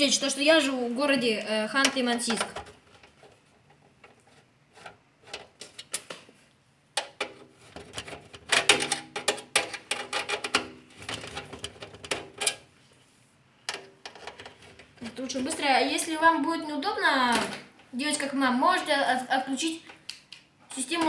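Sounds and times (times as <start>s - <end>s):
hard objects clicking and clattering: 7.0s - 12.6s.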